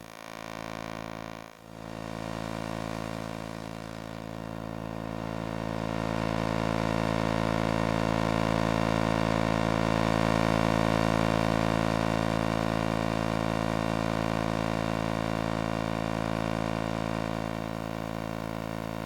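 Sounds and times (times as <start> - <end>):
electrical hum-buzz: 0.0 - 8.1.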